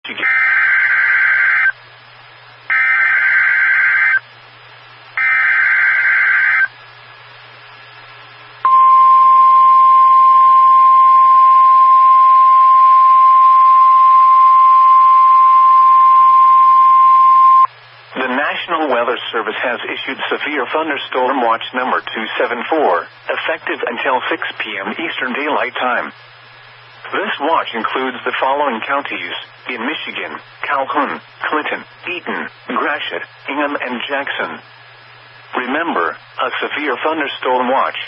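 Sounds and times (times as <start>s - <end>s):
steady single-pitch beep: 8.6s - 17.7s.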